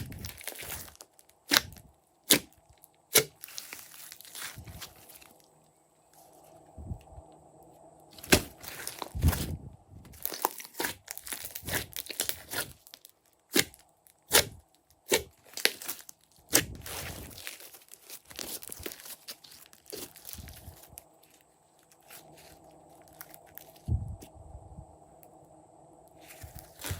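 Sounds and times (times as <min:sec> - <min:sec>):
hands kneading slime: 0:00.0 - 0:02.5, 0:03.1 - 0:05.2, 0:08.2 - 0:09.5, 0:10.1 - 0:21.4.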